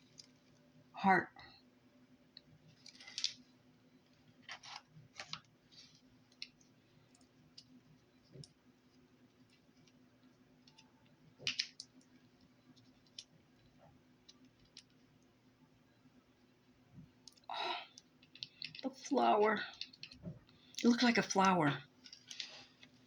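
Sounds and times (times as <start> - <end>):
faint steady hum: 0.0 - 23.0.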